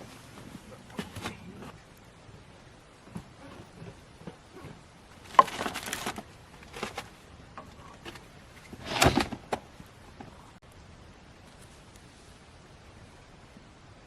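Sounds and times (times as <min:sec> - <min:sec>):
clattering knocks of handling: 0:03.1 - 0:10.4.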